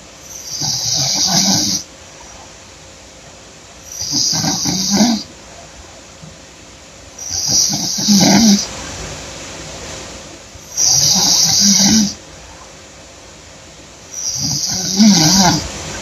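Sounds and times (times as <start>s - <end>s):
woman snoring loudly: 0.4s - 1.8s, 4.0s - 5.3s, 7.2s - 8.6s, 10.8s - 12.2s, 14.2s - 15.6s.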